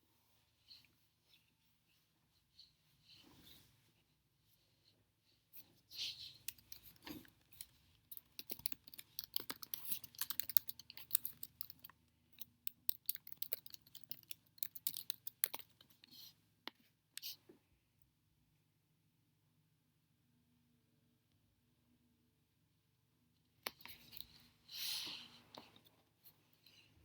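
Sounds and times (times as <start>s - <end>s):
small sharp clicks and taps: 6.5s - 16.0s.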